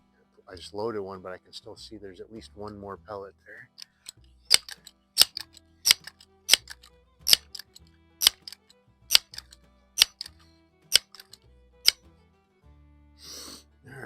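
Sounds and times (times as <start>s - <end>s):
low background music: 0.0s - 14.0s
air rifle pump lever clacks: 3.8s - 12.0s.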